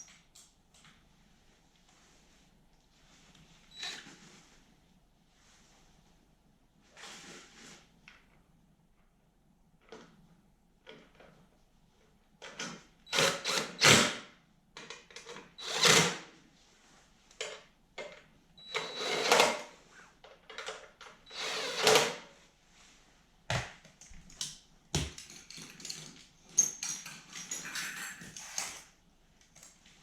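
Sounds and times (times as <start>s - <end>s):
power drill running: 13.1s - 14.1s, 15.6s - 16.2s, 18.6s - 19.6s, 21.3s - 22.2s
tools and parts clattering: 25.0s - 28.9s.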